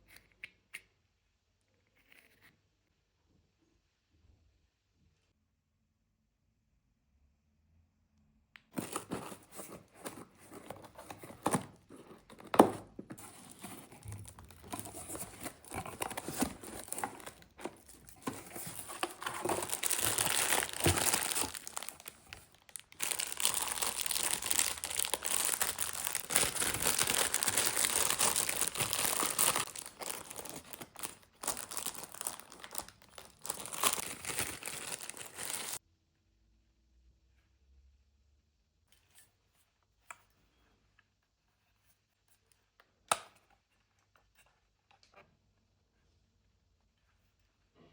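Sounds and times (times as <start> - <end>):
packaging crinkling and tearing: 8.7 - 35.8.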